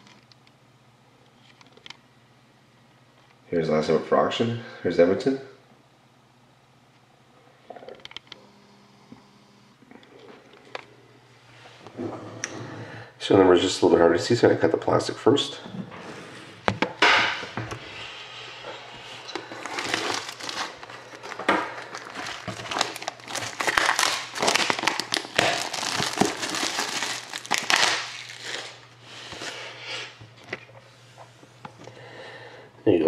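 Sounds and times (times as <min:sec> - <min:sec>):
low steady hum: 0:00.0 - 0:33.0
plastic shrink wrap crinkling: 0:19.2 - 0:29.6.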